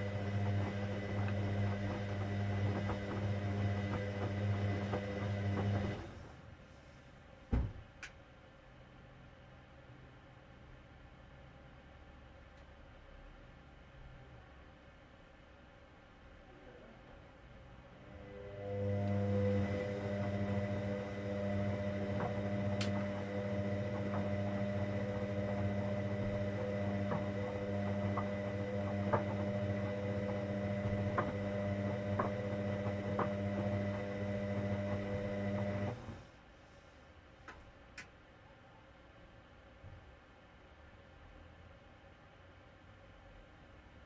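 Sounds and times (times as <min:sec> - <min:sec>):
washing machine humming: 0:00.0 - 0:06.8, 0:18.0 - 0:36.4.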